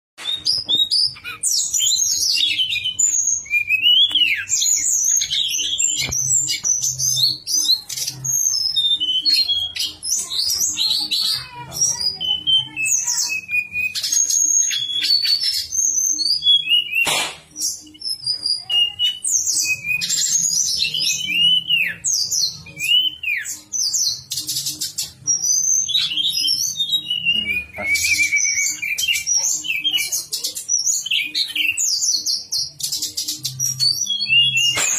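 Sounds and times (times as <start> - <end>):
songbird singing: 0.2 - 34.9.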